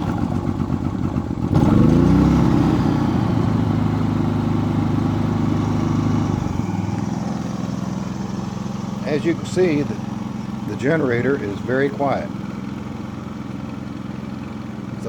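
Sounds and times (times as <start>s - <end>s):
generator engine running: 0.0s - 15.0s.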